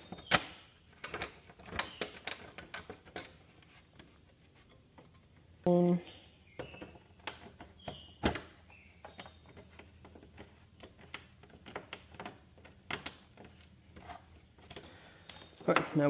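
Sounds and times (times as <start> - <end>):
light clicks and knocks of tools: 0.0 - 5.5, 6.6 - 16.0.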